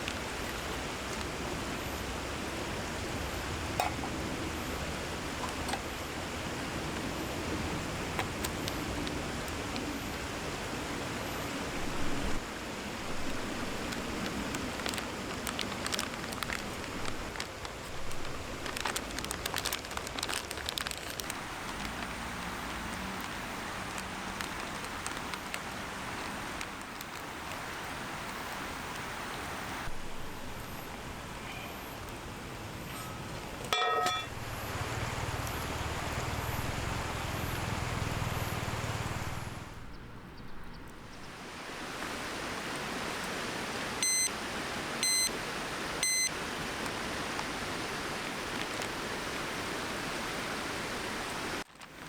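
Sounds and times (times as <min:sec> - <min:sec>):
metallic clink: 0:33.7 - 0:34.4.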